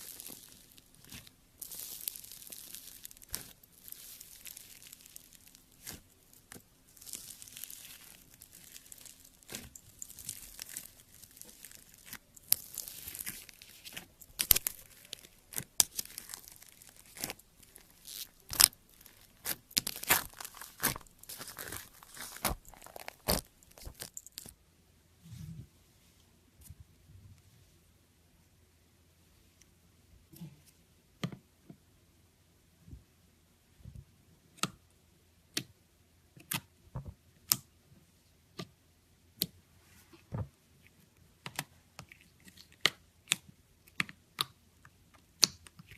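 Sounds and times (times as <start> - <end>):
slime crackling and popping: 0.0 - 24.5.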